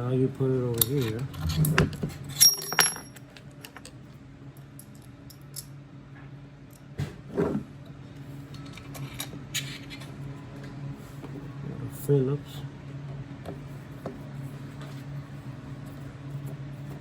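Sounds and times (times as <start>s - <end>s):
steady low hum: 0.0s - 17.0s
small metal parts clicking: 2.3s - 3.9s.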